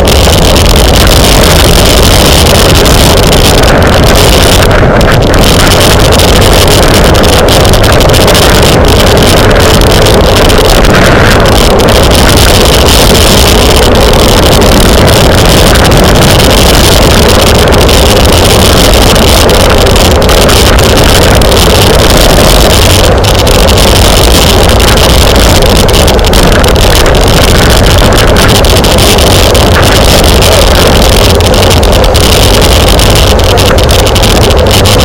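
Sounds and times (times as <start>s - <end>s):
wind rushing over microphone: 0.0s - 35.0s.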